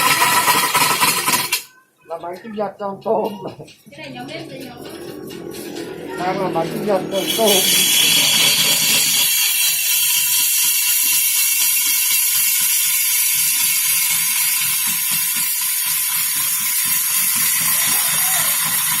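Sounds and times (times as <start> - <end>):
wood lathe scraping hiss: 0.0 - 1.6, 6.9 - 19.0.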